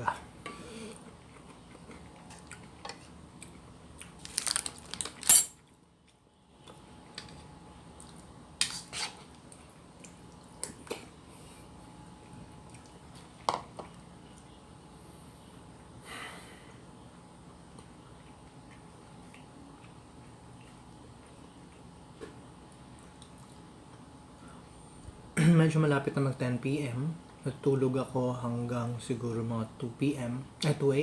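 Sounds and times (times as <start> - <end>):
utensils clinking against a bowl: 4.4 - 5.6.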